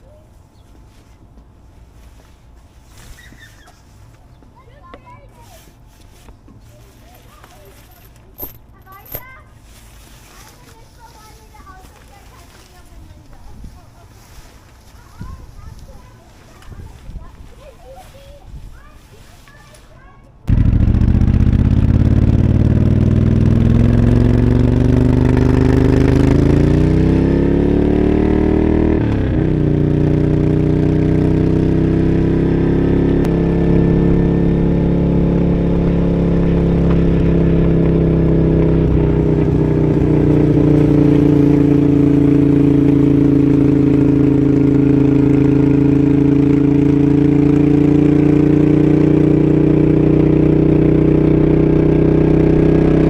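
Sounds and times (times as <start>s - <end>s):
motorcycle engine accelerating: 7.4s - 9.3s, 20.5s - 53.0s.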